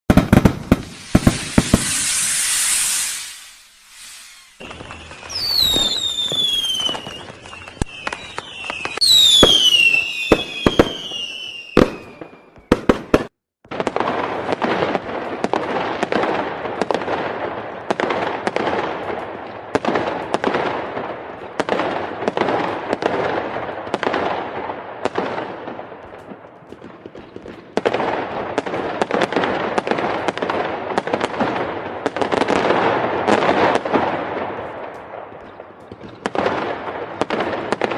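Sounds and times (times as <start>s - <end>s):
firework bangs and crackles: 0.1s - 37.9s
whistling rocket: 0.2s - 13.3s.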